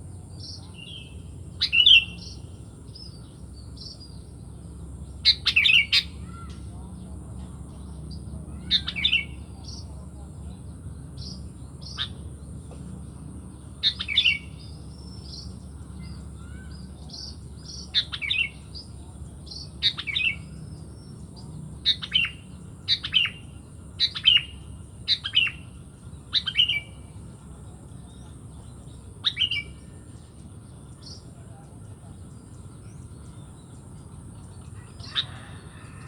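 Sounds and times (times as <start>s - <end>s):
soft whistled bird notes: 28.1s - 33.8s.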